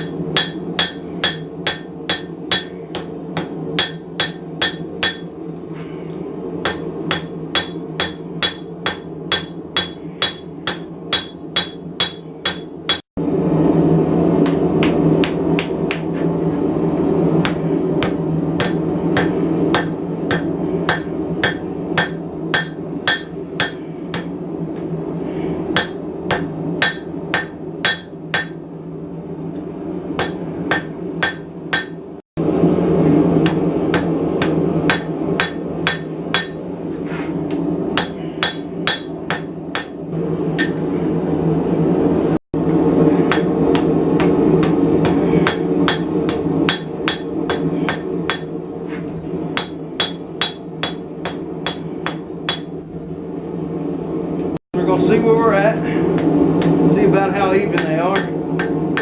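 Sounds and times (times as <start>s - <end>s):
hammer striking steel on anvil: 0.0s - 5.7s, 6.6s - 13.1s, 14.4s - 16.2s, 17.4s - 24.6s, 25.8s - 28.7s, 30.2s - 32.2s, 33.4s - 37.1s, 38.0s - 41.2s, 43.2s - 48.8s, 49.6s - 53.0s, 56.2s - 59.0s
steady low rumble: 0.0s - 59.0s.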